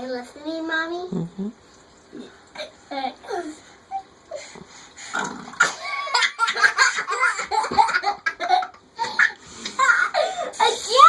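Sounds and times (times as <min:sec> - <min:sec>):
child laughing: 0:05.8 - 0:11.0.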